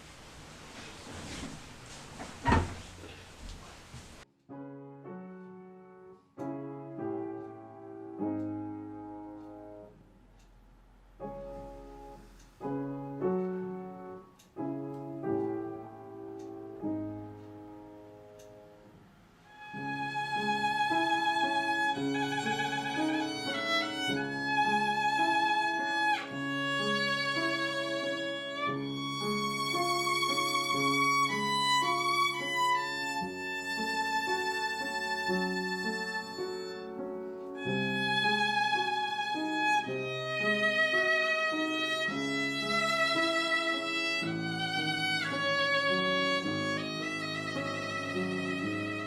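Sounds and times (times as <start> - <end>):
lower accompaniment: 4.5 - 49.0
violin playing slow melody: 19.5 - 49.0.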